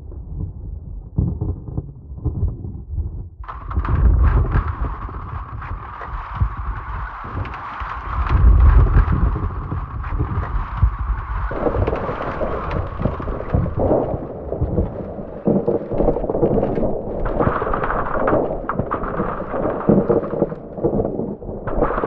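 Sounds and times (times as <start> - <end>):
ice breaking and crashing: 6.9 - 21.1.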